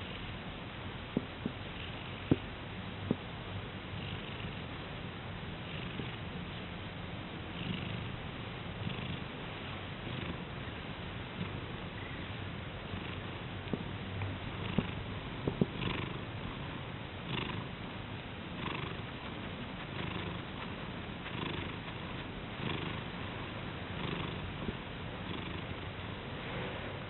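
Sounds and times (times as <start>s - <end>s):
cat purring: 1.2s - 2.5s, 3.9s - 4.8s, 5.6s - 6.6s, 7.4s - 12.2s, 12.8s - 17.8s, 18.5s - 26.6s.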